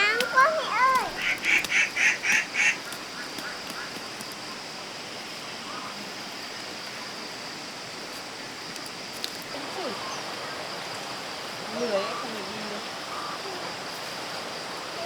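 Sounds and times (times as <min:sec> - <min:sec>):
geese honking: 0:00.0 - 0:02.9
steady background hiss: 0:00.0 - 0:15.0.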